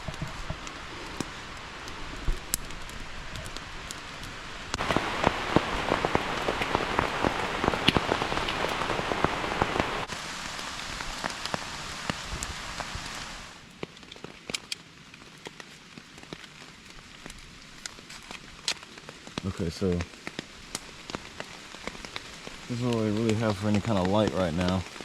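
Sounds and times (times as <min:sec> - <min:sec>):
rain falling: 0:00.0 - 0:25.0
raindrops tapping: 0:04.8 - 0:13.2, 0:16.0 - 0:25.0.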